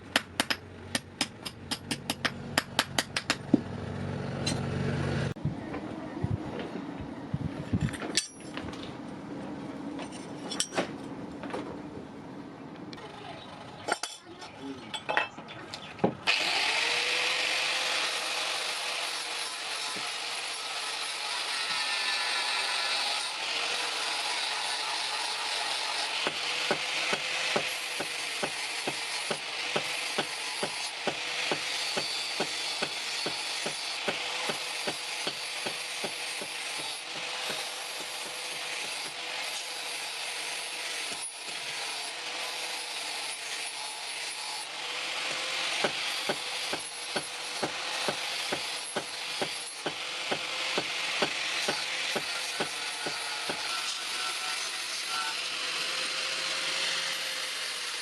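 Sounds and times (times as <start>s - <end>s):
sharp metal strokes: 17.2s - 58.0s.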